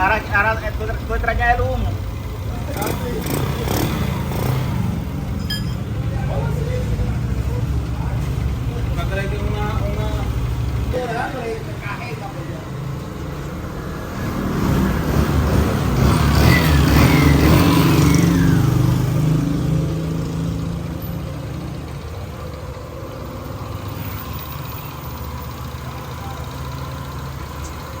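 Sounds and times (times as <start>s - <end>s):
scooter engine revving and idling: 0.6s - 28.0s.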